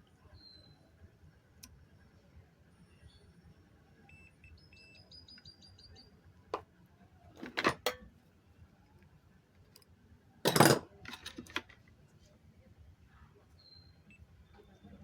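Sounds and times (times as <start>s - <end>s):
multimeter beeps: 4.0s - 6.1s.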